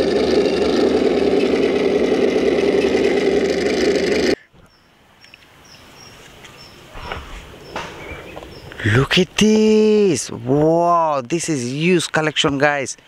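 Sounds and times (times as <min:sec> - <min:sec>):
toy tank engine rumble: 0:00.0 - 0:04.4.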